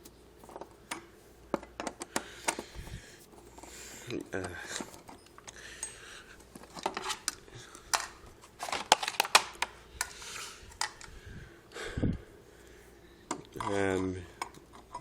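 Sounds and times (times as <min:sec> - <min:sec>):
hard plastic parts clicking: 0:00.5 - 0:02.9, 0:06.5 - 0:11.1.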